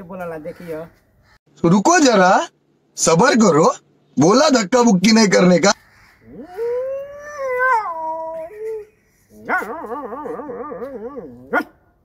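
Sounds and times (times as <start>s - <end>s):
man imitating dog howls: 6.3s - 8.8s, 9.4s - 11.6s.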